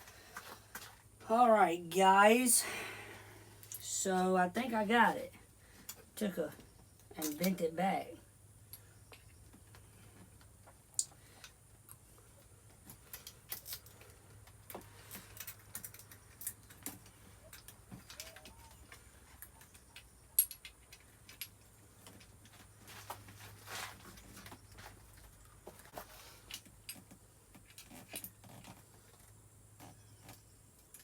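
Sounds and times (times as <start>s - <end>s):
metal parts and tools clicking: 15.1s - 21.7s.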